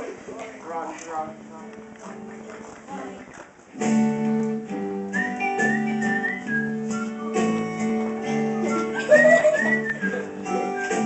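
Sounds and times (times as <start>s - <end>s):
acoustic guitar chords: 1.1s - 11.0s
whistled melody: 5.0s - 11.0s.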